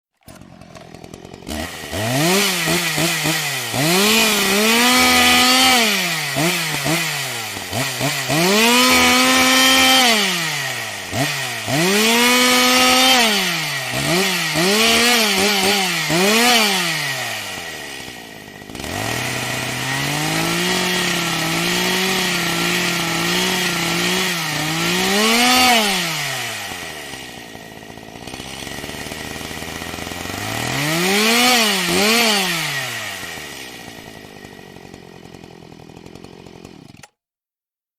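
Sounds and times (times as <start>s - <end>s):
chainsaw engine revving: 0.1s - 37.2s.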